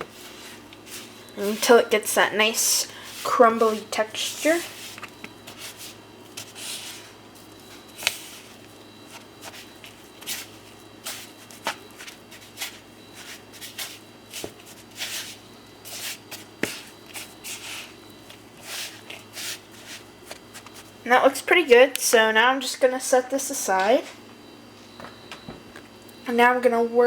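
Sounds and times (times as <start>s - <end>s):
utensil scraping in a bowl: 0.0s - 20.9s.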